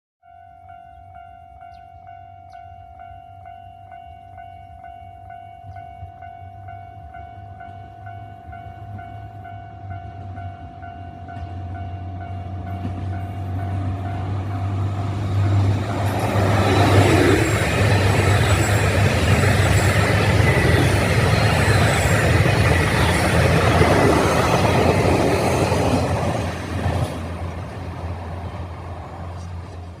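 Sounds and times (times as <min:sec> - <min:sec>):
train wheels on rails: 0:07.2 - 0:30.0
diesel engines humming: 0:11.2 - 0:30.0.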